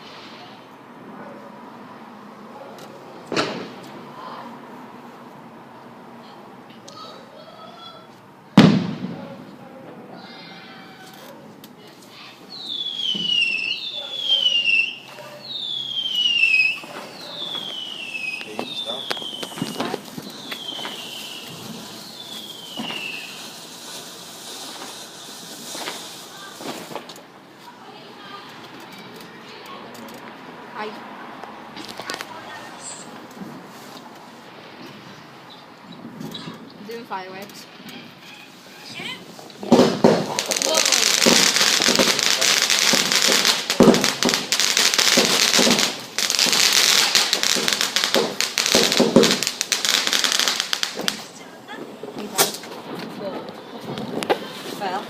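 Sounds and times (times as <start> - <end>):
firework bangs: 3.2 - 4.0, 8.5 - 11.2, 12.2 - 27.2, 36.0 - 55.0
firework whistles falling in pitch: 12.5 - 24.0.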